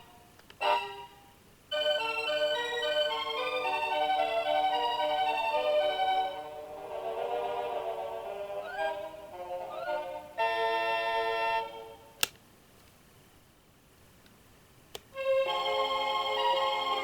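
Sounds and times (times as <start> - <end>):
sharp click: 12.2 - 12.4.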